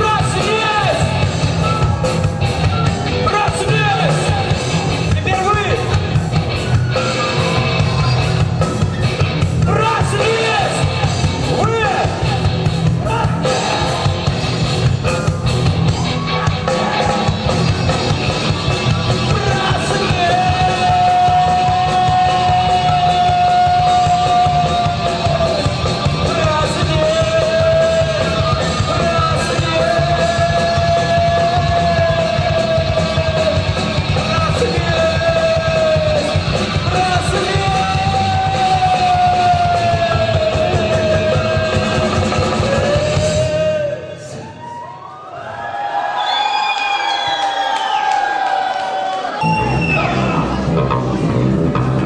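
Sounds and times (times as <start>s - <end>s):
rock band playing heavy music: 0.0s - 44.4s, 49.4s - 52.0s.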